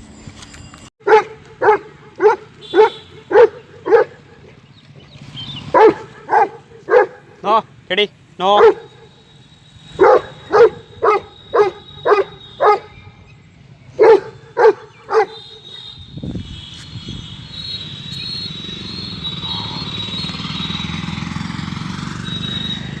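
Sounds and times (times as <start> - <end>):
dog barking: 1.0 - 4.6, 5.7 - 7.5, 8.5 - 9.1, 10.0 - 13.0, 14.0 - 15.7.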